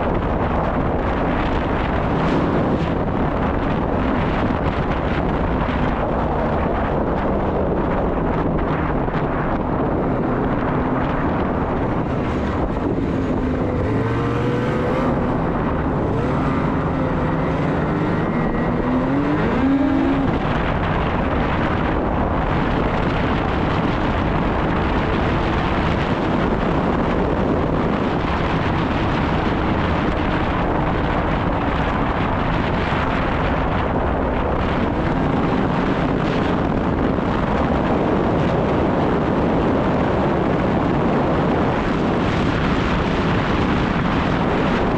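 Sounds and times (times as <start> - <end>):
wind noise on microphone: 0.0 - 44.9
snowmobile engine revving: 9.9 - 21.8.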